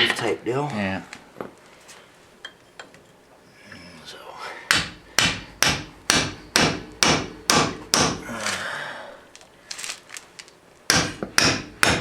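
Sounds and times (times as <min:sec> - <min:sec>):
hammer striking metal: 0:04.7 - 0:08.2, 0:10.9 - 0:12.0.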